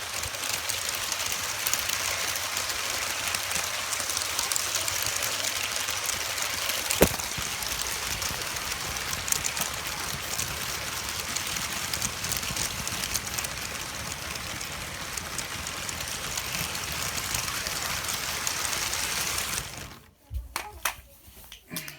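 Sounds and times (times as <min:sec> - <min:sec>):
toy train whirring: 0:00.0 - 0:20.1
sharp knock: 0:07.0 - 0:07.4.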